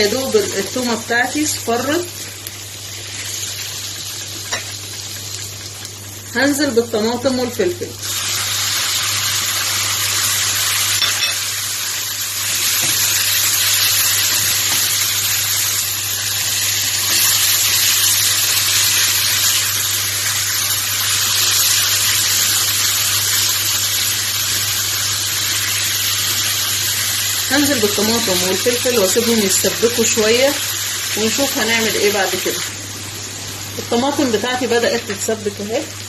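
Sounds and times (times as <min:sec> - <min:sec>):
vegetables sizzling in hot oil: 0:00.0 - 0:36.0.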